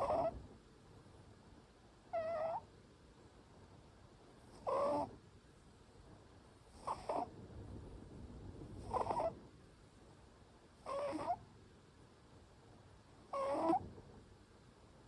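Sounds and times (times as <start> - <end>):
cat snoring: 0.0 - 0.4, 2.1 - 2.6, 4.4 - 5.1, 6.6 - 7.3, 8.7 - 9.4, 10.8 - 11.4, 13.3 - 13.8.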